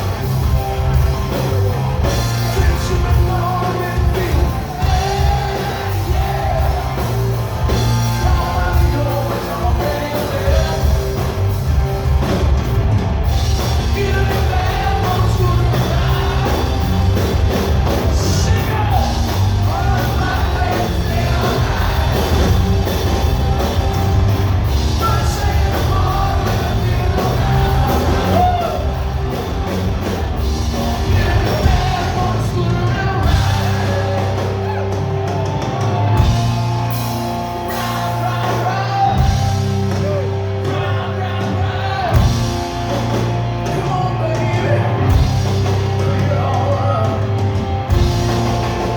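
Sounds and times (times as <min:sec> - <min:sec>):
live rock band playing: 0:00.0 - 0:48.9
person singing: 0:13.6 - 0:23.9, 0:25.0 - 0:29.7.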